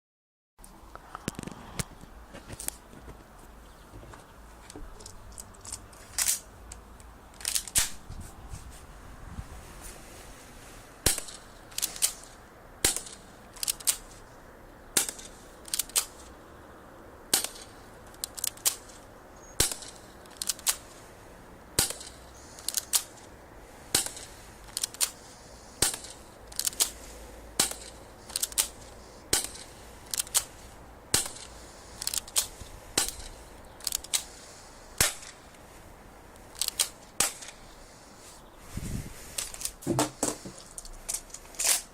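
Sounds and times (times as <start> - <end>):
airsoft gun shots: 11.0 - 11.4, 35.0 - 35.4.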